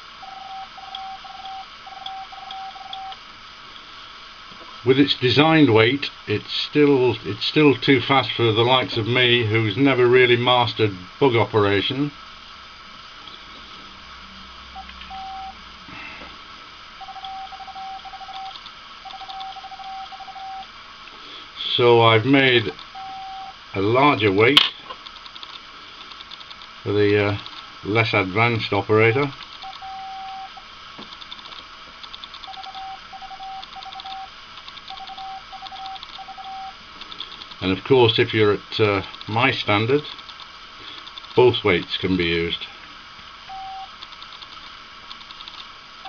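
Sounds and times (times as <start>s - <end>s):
morse code beeping: 0.2s - 3.2s, 14.8s - 15.6s, 17.0s - 20.7s, 22.9s - 23.6s, 29.6s - 30.6s, 32.4s - 36.8s, 43.5s - 43.9s.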